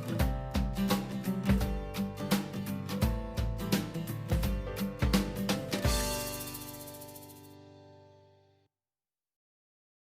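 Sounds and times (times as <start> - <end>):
background music with beat: 0.0 - 7.6.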